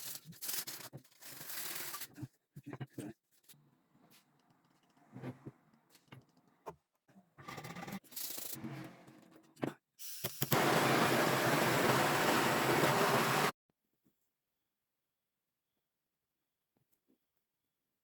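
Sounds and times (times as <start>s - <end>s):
loud even hiss: 10.2s - 13.5s.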